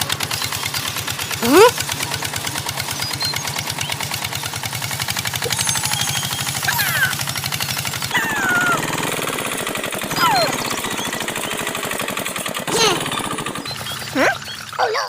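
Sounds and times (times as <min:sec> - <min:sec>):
tractor engine putt-putt: 0:00.0 - 0:14.8
high sliding cries or whistles: 0:05.4 - 0:07.4, 0:08.2 - 0:09.0.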